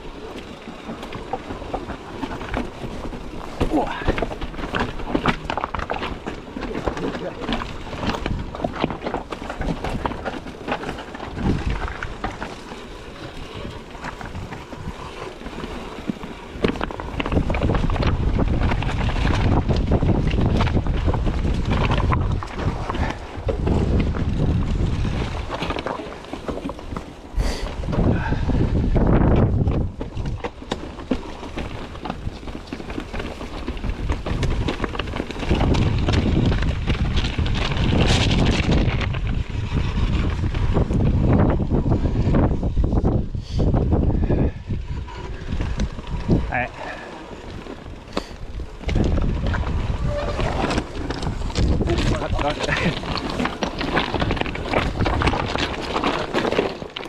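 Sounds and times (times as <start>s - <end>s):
bike rattling: 0.0s - 57.0s
wind buffeting microphone: 0.0s - 57.0s
tyres knocking over rocks: 0.6s - 28.2s, 46.1s - 57.0s.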